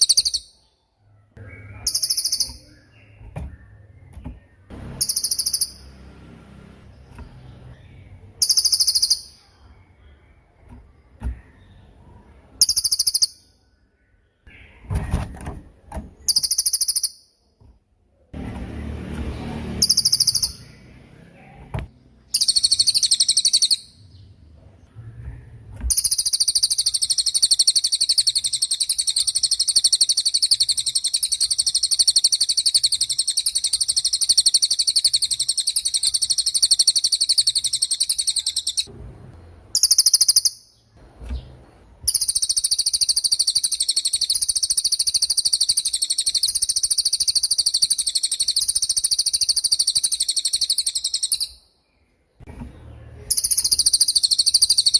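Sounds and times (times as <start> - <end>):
songbird high buzzing trills: 4.7 - 6.0, 19.2 - 20.9.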